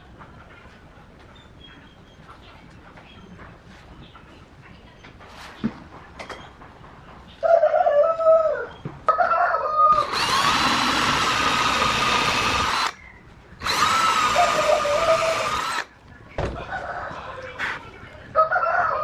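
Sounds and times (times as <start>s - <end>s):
rooster crowing: 7.4s - 10.2s, 16.6s - 17.6s, 18.4s - 19.0s
electric power tool motor: 9.9s - 13.0s, 13.6s - 15.9s.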